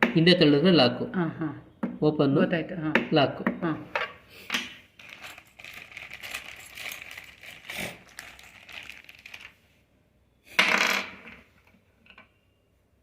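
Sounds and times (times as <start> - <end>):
parts clattering: 4.0 - 9.6
small parts clicking and rattling: 5.0 - 9.6.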